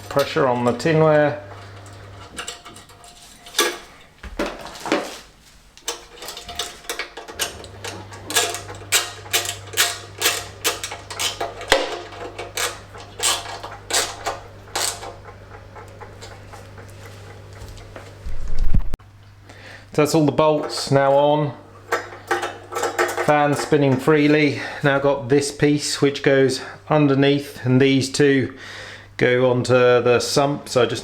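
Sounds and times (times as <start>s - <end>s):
hand tool clicking on metal: 5.8s - 16.9s.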